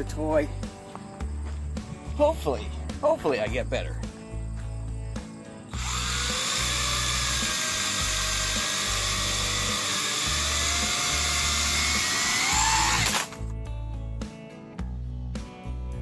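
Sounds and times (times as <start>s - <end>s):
toy drone motors whining: 5.8s - 13.4s.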